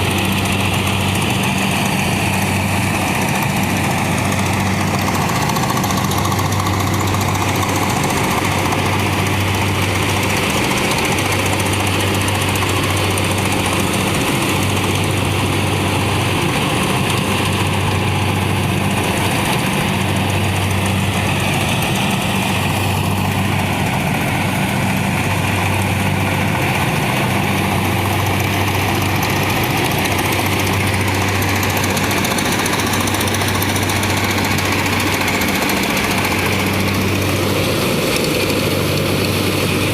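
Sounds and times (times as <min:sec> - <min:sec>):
combine harvester drone: 0:00.0 - 0:39.9.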